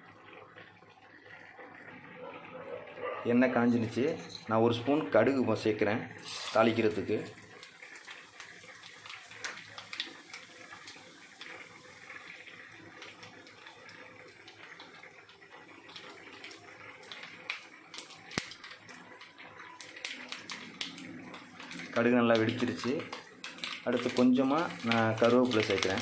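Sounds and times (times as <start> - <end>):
mustard seeds spluttering in oil: 6.2 - 12.1, 12.9 - 26.0.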